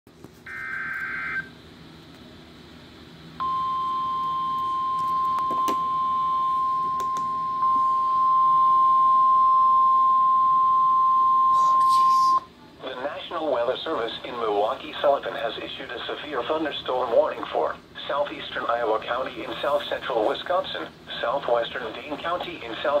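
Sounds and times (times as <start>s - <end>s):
high alarm tone: 0.5s - 1.6s, 3.4s - 12.5s.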